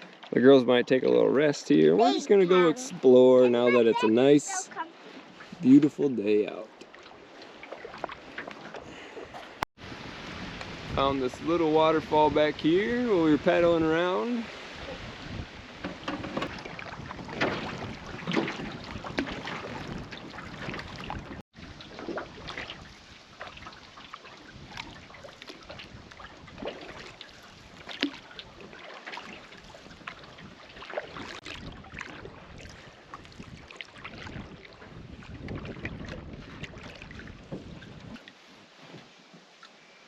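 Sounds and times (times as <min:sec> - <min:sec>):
steady water rush: 0:00.0 - 0:40.0
water splashing and trickling: 0:00.0 - 0:40.0
wind on microphone: 0:08.8 - 0:28.7, 0:29.6 - 0:38.2.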